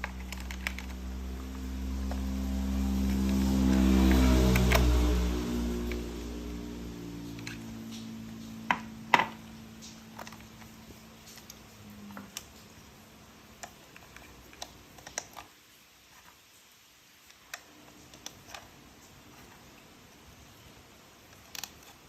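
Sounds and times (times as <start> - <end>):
plastic toy parts clicking: 0.0 - 1.1, 8.7 - 12.6, 13.5 - 16.4, 17.3 - 19.6, 21.3 - 22.0.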